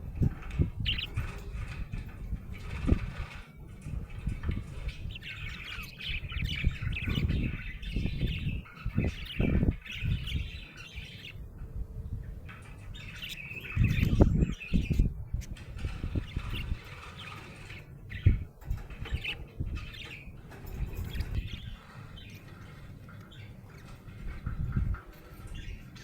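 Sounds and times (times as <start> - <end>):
budgerigar chirping: 0.8 - 1.3, 4.8 - 11.4.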